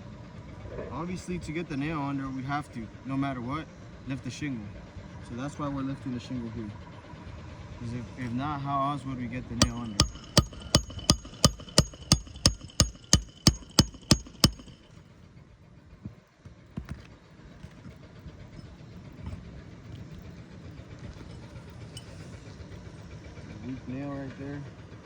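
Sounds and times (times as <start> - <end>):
low steady rumble: 6.2 - 25.0
hammer striking metal tool: 9.6 - 14.9.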